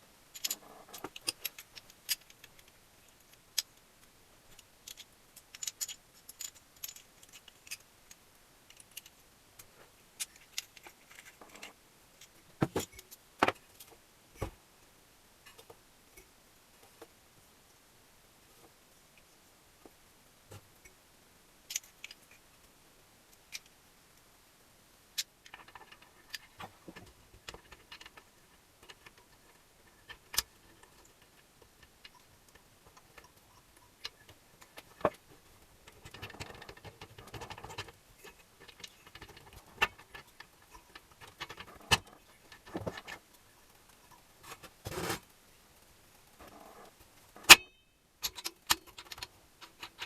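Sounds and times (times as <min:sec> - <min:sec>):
metal parts rattling: 0:00.3 - 0:02.7, 0:04.8 - 0:07.8
tools clicking and tapping: 0:47.5 - 0:50.0.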